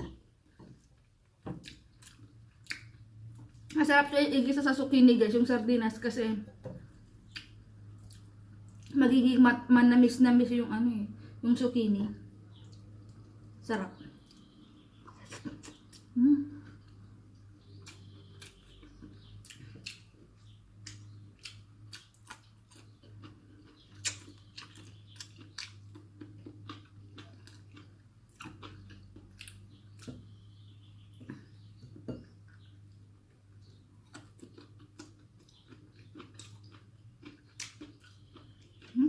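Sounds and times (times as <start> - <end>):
person chewing: 0.8 - 3.8, 6.8 - 9.0, 14.2 - 39.0.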